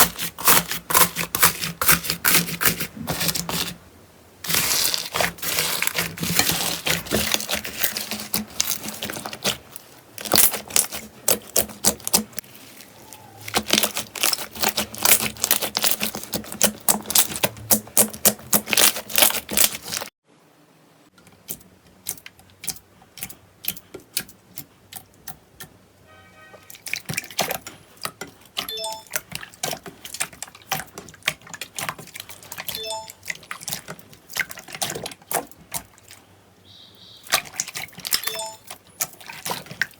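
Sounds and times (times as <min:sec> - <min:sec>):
slime crackling and popping: 0:04.5 - 0:20.1
short tones: 0:28.7 - 0:29.2.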